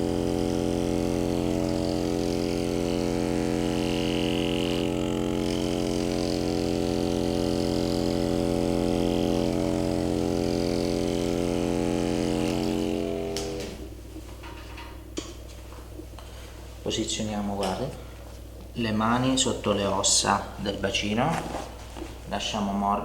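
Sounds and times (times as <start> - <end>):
small electric motor humming: 0.0 - 14.0.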